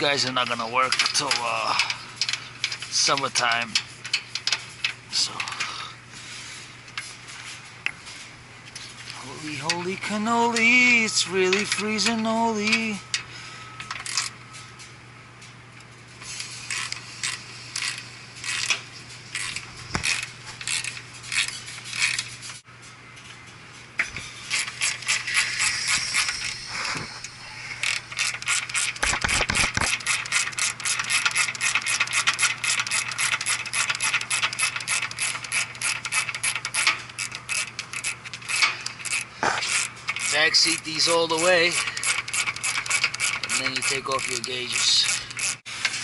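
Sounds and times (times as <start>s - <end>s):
ratcheting wrench clicking: 0.4s - 5.6s, 13.8s - 14.3s, 16.3s - 22.6s, 24.0s - 46.0s.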